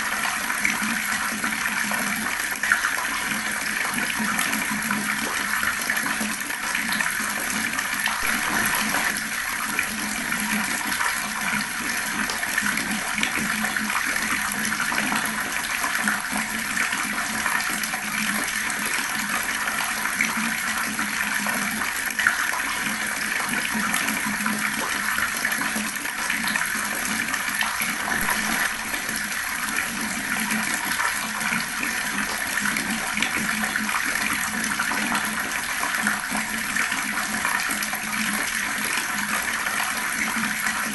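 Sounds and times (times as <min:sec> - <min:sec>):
fast-flowing water splashing: 0:00.0 - 0:40.9.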